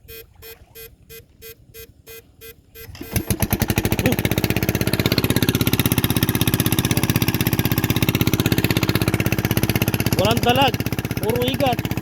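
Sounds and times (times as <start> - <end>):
small engine running: 2.8 - 12.0.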